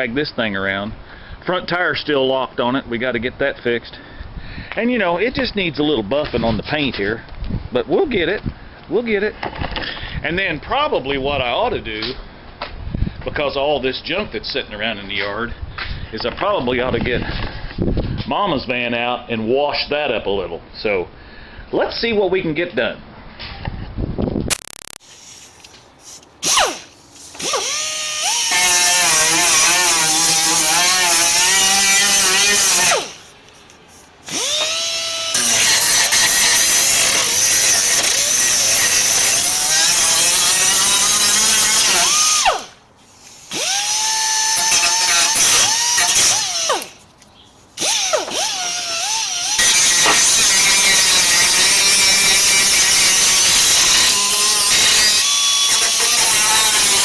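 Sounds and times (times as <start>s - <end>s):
electric power tool running: 26.4s - 33.3s, 34.2s - 42.8s, 43.4s - 47.0s, 47.8s - 57.0s.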